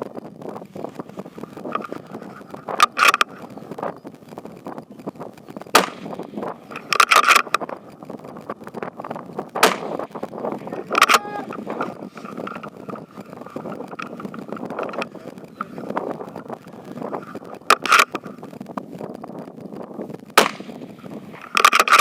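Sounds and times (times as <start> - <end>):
rustling of gear: 0.2 - 5.6, 6.2 - 19.3
rifle shots: 5.7 - 6.2, 9.6 - 10.1, 20.4 - 20.8
metallic clicks and clatter: 6.7 - 9.2, 21.4 - 22.0.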